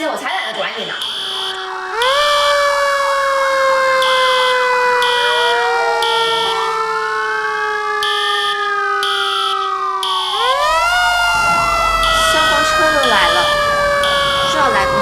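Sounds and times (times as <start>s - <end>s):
fast warbling siren yelp: 0.0s - 15.0s
fire engine sirens wailing: 0.0s - 15.0s
high pulsing beep: 0.3s - 1.7s, 11.4s - 15.0s.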